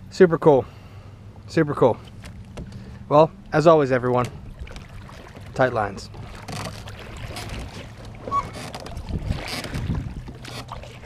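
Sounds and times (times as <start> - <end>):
steady low hum: 0.0 - 11.0
water sloshing around boat: 0.7 - 11.0
wind on microphone: 4.3 - 11.0.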